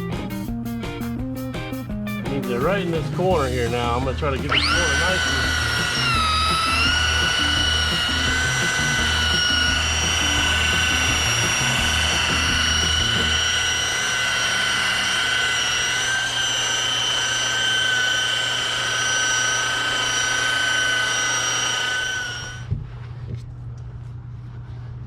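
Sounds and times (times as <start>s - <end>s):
rotary polisher whining: 3.4s - 22.7s.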